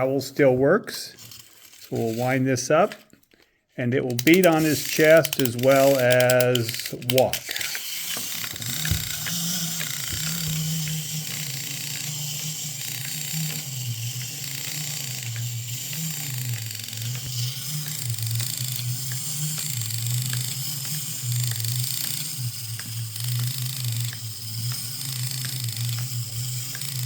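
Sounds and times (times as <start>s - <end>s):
toy arms thumping chest: 4.1s - 12.1s.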